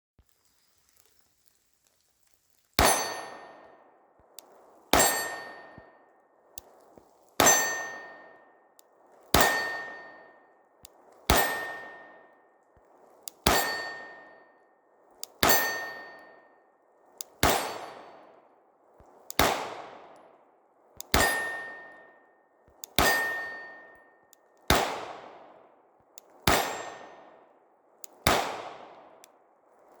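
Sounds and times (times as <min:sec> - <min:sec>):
pistol shots: 0:04.9 - 0:05.9, 0:07.4 - 0:08.4, 0:09.3 - 0:10.2, 0:11.3 - 0:12.2, 0:13.4 - 0:14.2, 0:17.2 - 0:18.2, 0:19.3 - 0:20.1, 0:21.0 - 0:21.9, 0:22.9 - 0:23.8, 0:24.7 - 0:25.6, 0:26.3 - 0:27.4, 0:28.1 - 0:29.3
metallic ring: 0:15.5 - 0:16.6, 0:23.0 - 0:24.3.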